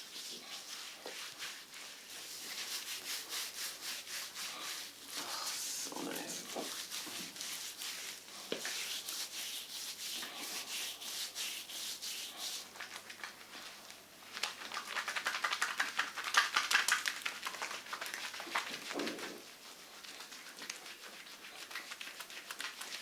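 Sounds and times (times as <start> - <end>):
skin rubbing on skin: 0.0 - 12.9, 17.6 - 23.0.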